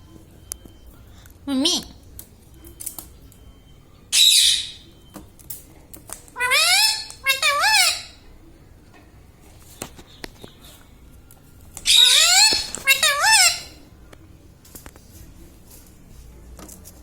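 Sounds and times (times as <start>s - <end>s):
parrot harsh squawk: 4.1s - 4.8s, 6.4s - 8.2s, 11.9s - 13.8s
parrot high-pitched two-part call: 4.1s - 4.8s, 6.4s - 8.2s, 11.8s - 13.8s.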